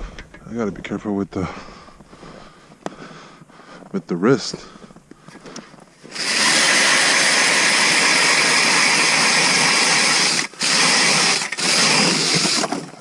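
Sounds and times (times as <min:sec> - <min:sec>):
drill boring through ice: 0:06.0 - 0:13.0.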